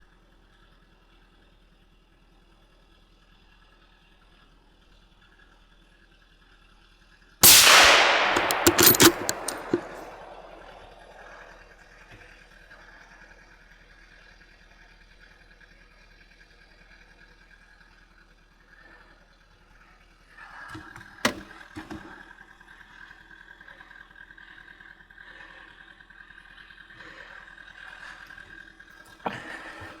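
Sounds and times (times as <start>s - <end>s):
sharp click: 7.4s - 11.3s
rifle shot echoing: 7.4s - 11.5s.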